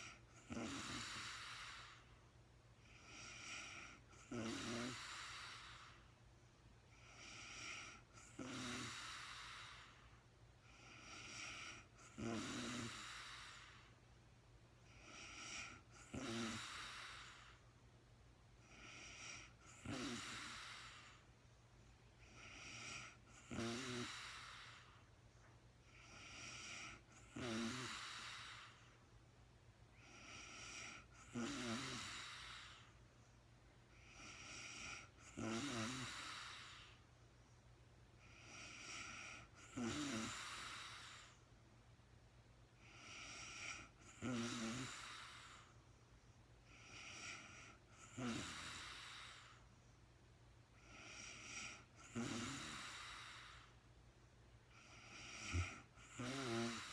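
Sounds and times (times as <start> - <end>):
woman snoring: 0.0 - 2.1, 2.8 - 6.0, 7.0 - 10.0, 10.7 - 13.9, 14.9 - 17.6, 18.6 - 21.2, 22.2 - 25.0, 26.0 - 28.8, 30.0 - 32.9, 34.0 - 37.0, 38.3 - 41.3, 42.8 - 45.7, 46.7 - 49.6, 50.8 - 53.7, 54.7 - 56.9.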